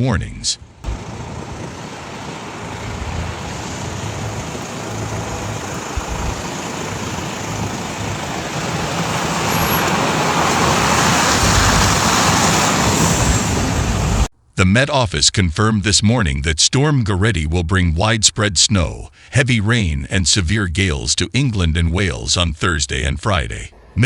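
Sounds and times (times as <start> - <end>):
vehicles driving past: 0.5 - 14.3.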